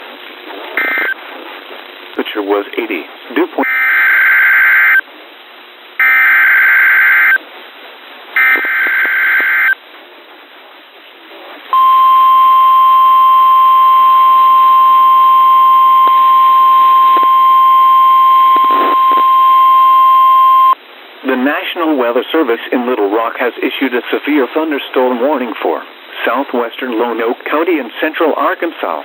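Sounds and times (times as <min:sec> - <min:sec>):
steady warning alarm tone: 0:03.6 - 0:05.0, 0:06.0 - 0:07.4, 0:08.4 - 0:09.8, 0:11.8 - 0:20.8
warbling digital data tones: 0:11.8 - 0:20.8.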